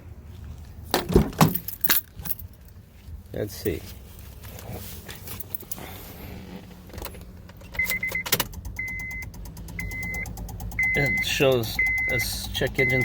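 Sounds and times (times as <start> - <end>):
dashboard warning chime: 7.8 - 13.0.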